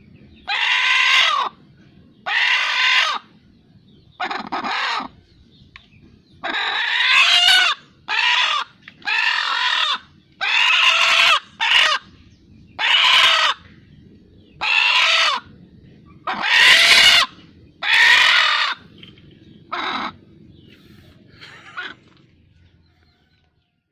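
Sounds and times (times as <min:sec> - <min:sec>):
chicken calling: 0:00.4 - 0:01.6, 0:02.2 - 0:03.3, 0:04.2 - 0:05.2, 0:06.4 - 0:12.1, 0:12.8 - 0:13.6, 0:14.6 - 0:15.5, 0:16.2 - 0:18.9, 0:19.7 - 0:20.2, 0:21.4 - 0:22.2.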